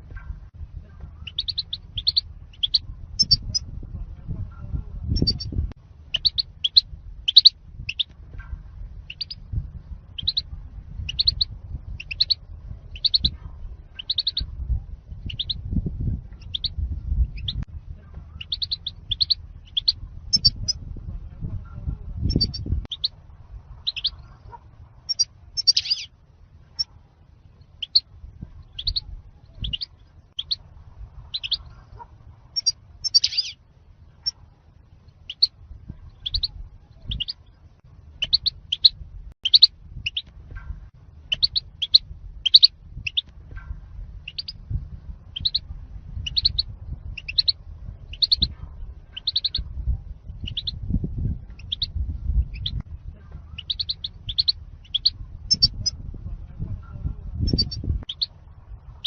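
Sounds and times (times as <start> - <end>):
faint low rumble: 0.0 - 59.0
goldfinch chirps: 1.2 - 3.6, 6.1 - 8.1, 9.1 - 9.4, 10.2 - 10.5, 11.1 - 13.4, 14.0 - 14.5, 15.2 - 15.6, 16.4 - 17.6, 18.4 - 20.7, 22.3 - 23.1, 23.8 - 24.2, 25.1 - 26.1, 27.7 - 30.6, 31.3 - 31.7, 32.6 - 33.6, 35.1 - 37.5, 38.2 - 40.3, 41.3 - 43.2, 44.2 - 44.6, 45.3 - 45.6, 46.2 - 48.5, 49.1 - 49.6, 50.3 - 50.8, 51.5 - 52.8, 53.5 - 56.0, 57.4 - 58.3.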